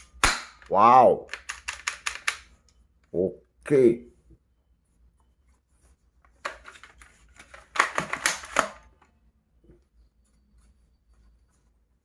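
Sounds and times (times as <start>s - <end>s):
plastic toy gun clicking: 1.3s - 2.4s.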